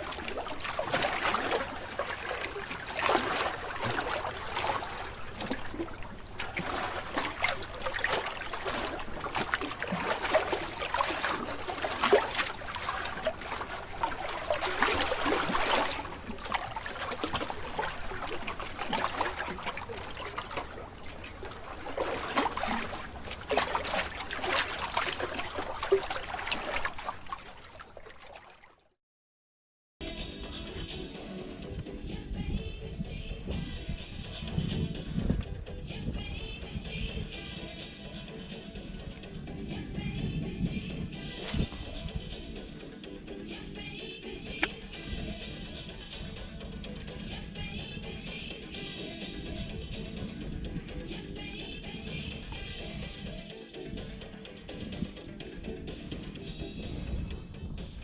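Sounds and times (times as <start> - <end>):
water splashing and trickling: 0.0 - 28.9, 41.4 - 42.8.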